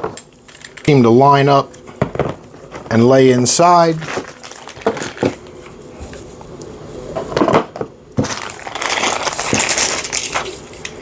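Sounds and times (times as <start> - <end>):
plastic case rustling: 3.9 - 5.8, 8.2 - 10.7.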